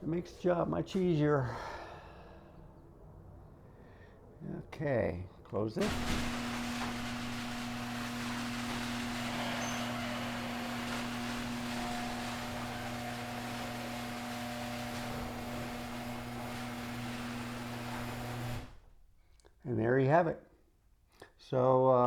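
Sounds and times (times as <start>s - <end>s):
door rumbling along tracks: 5.8s - 18.8s
garage door motor hum: 5.8s - 18.9s.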